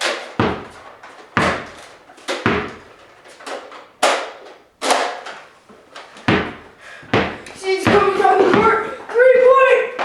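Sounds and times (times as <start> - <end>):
sharp knocks ringing in room: 0.0 - 2.9, 6.2 - 8.9.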